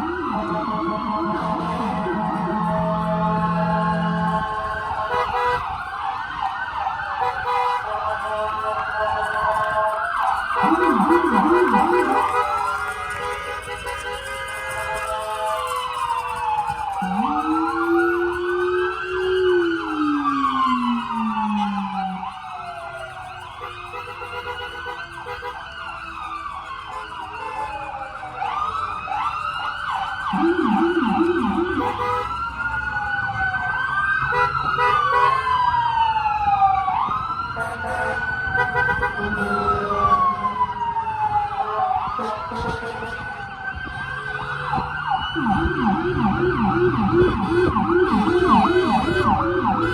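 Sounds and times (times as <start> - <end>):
low siren yelp: 0.0 - 49.9
sirens wailing: 0.0 - 49.9
deep siren winding: 9.3 - 23.7.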